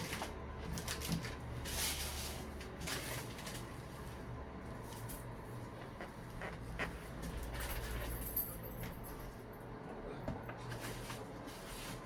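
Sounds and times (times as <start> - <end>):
rustling and handling noises: 0.0 - 5.7, 10.3 - 12.0
low steady hum: 0.0 - 12.0
soft scrapes: 10.7 - 12.0.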